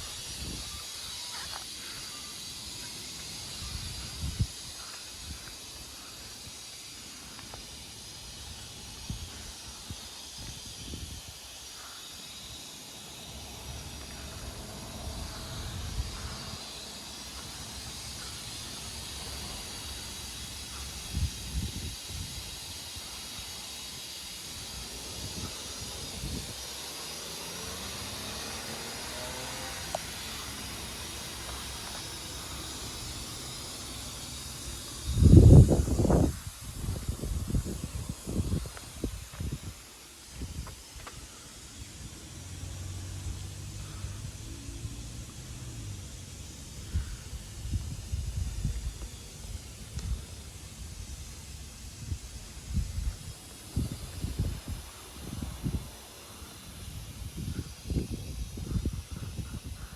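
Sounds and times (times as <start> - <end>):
clock mechanism hissing: 0.0 - 59.9.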